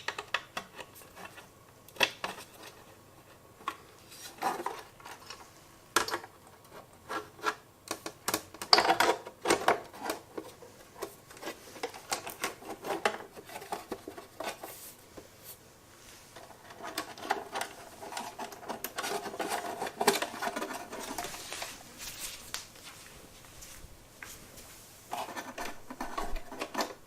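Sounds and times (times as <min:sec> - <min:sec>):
small parts clicking and scraping: 0:25.1 - 0:27.0.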